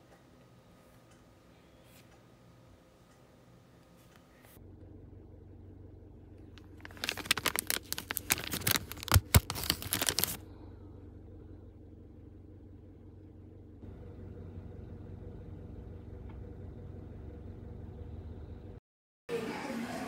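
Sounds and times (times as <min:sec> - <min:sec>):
steady low hum: 0:00.0 - 0:18.8
packaging crinkling: 0:06.5 - 0:10.4.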